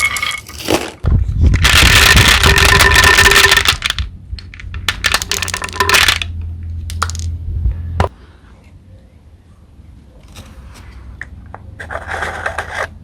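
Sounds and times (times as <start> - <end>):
low steady hum: 0.0 - 11.8
sharp cracks and clicks: 1.6 - 6.3.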